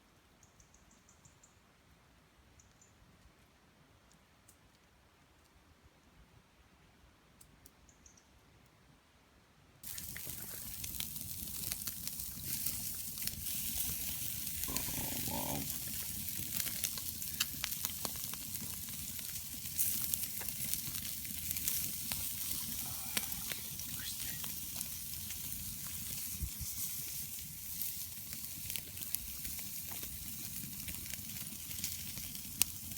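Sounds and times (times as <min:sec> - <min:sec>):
food sizzling in frying: 0:09.8 - 0:32.9.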